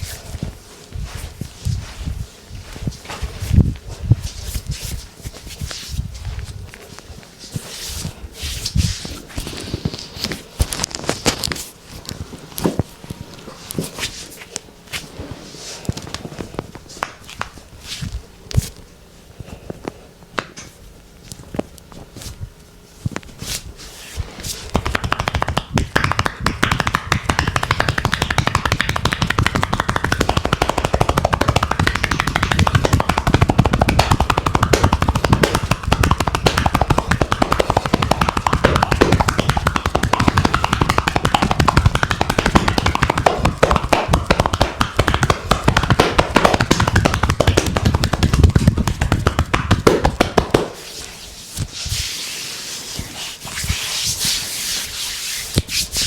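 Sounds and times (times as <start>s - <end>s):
hands slapping skin in massage: 0.0s - 12.9s, 13.6s - 18.8s, 23.1s - 56.0s.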